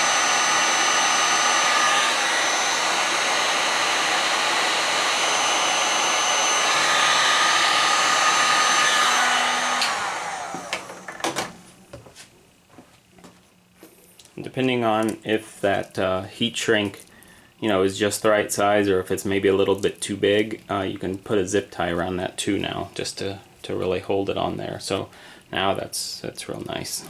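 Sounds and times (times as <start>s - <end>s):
heat gun blowing: 0.0s - 11.4s.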